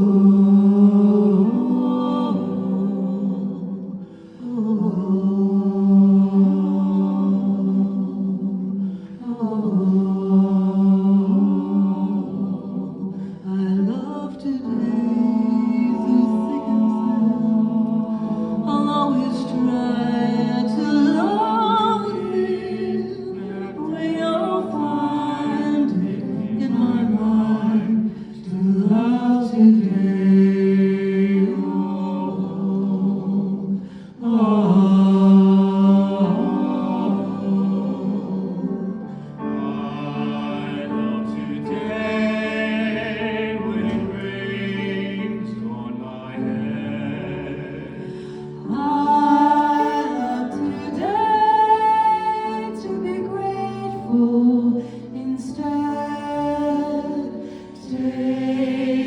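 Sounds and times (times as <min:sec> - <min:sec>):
voices singing together: 0:00.0 - 0:59.0
singers breathing: 0:04.0 - 0:04.5, 0:08.7 - 0:09.2, 0:33.7 - 0:34.2, 0:48.0 - 0:48.6.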